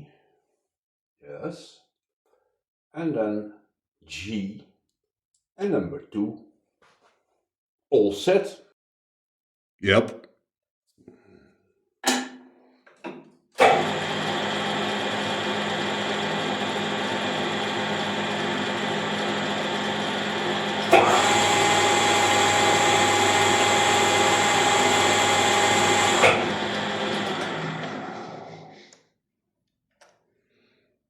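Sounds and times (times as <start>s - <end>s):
lathe clunk: 13.1s - 14.1s, 20.7s - 28.0s
metal lathe running with gear whine: 13.6s - 28.6s.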